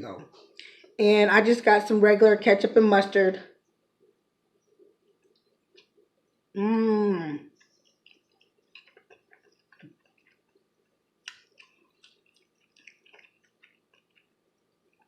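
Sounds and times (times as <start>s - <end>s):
chewing mouth clicks and smacks: 4.6s - 6.1s, 7.5s - 15.0s.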